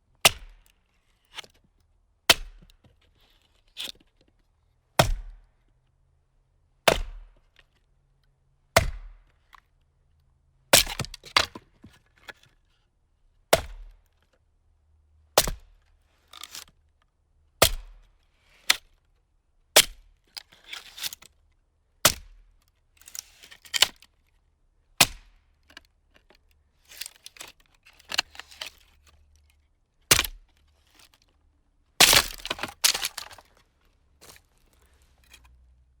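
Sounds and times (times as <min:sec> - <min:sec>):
axe splitting firewood: 0:00.2 - 0:00.6, 0:02.3 - 0:02.7, 0:05.0 - 0:05.4, 0:06.9 - 0:07.4, 0:10.7 - 0:11.9, 0:13.5 - 0:14.0, 0:15.4 - 0:15.6, 0:17.6 - 0:18.0, 0:22.0 - 0:22.4, 0:25.0 - 0:25.3, 0:30.1 - 0:31.1, 0:32.0 - 0:33.6
wood cracking apart: 0:32.0 - 0:33.6.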